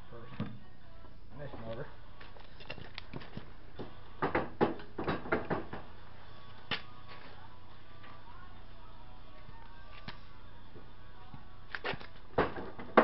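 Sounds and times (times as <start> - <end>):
metal clunks and knocks: 3.8 - 5.9, 12.4 - 13.0.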